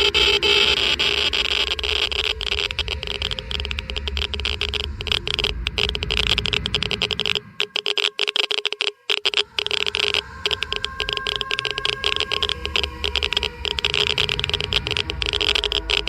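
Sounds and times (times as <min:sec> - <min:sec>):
low hum: 0:00.0 - 0:08.1, 0:09.1 - 0:16.0
geiger counter clicking: 0:00.0 - 0:16.0
steady hiss: 0:00.0 - 0:16.0.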